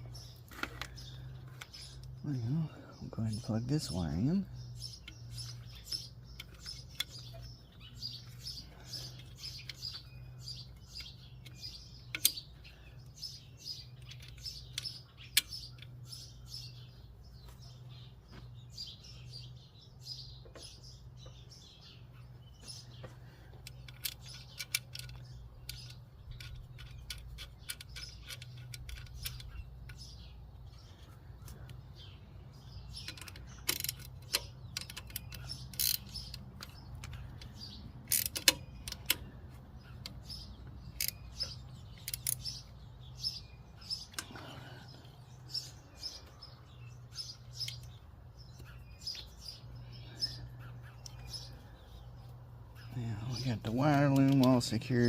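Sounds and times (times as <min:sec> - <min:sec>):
small birds chirping: 0:00.0 - 0:55.0
sharp clicks: 0:10.8 - 0:12.4, 0:23.6 - 0:30.2, 0:32.9 - 0:44.4, 0:47.2 - 0:49.6, 0:53.3 - 0:55.0.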